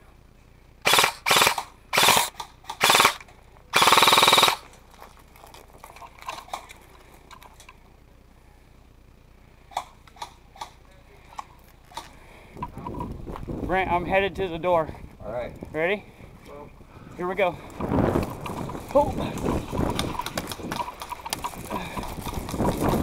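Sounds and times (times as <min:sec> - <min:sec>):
airsoft rifle firing bursts: 0:00.8 - 0:04.7
faint clicks and ticks: 0:17.7 - 0:22.9.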